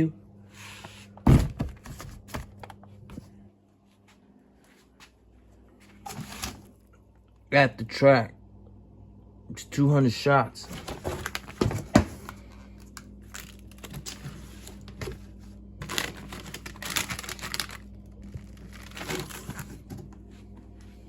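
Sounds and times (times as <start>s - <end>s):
cardboard and plastic crinkling: 10.7s - 20.2s.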